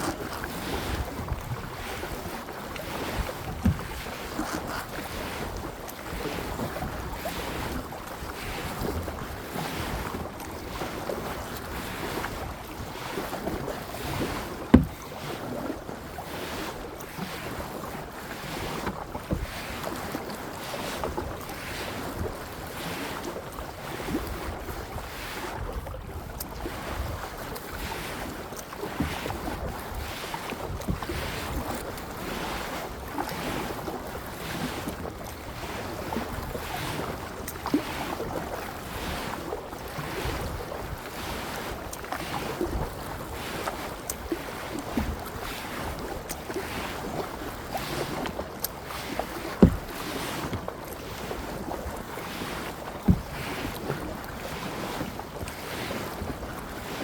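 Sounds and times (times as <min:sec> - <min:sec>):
paddle splashing water: 0:00.0 - 0:57.0.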